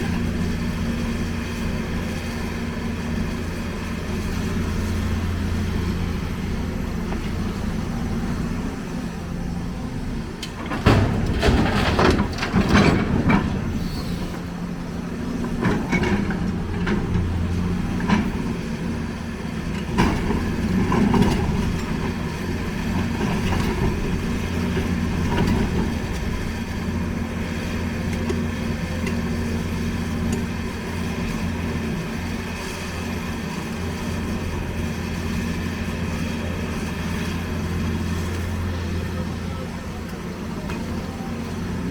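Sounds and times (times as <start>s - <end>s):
excavator diesel engine running: 0.0s - 41.9s
metal clanking and clattering: 10.5s - 14.5s.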